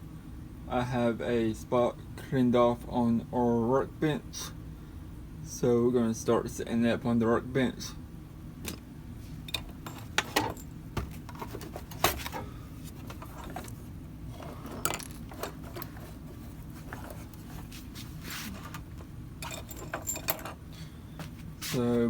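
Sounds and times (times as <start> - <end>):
low steady hum: 0.0 - 22.0
parts clinking and knocking: 9.4 - 17.7, 18.6 - 20.7.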